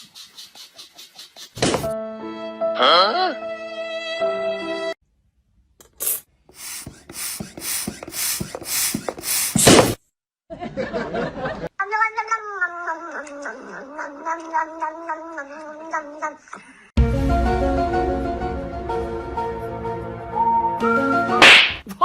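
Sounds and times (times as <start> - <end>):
cat yowling: 11.8 - 16.4.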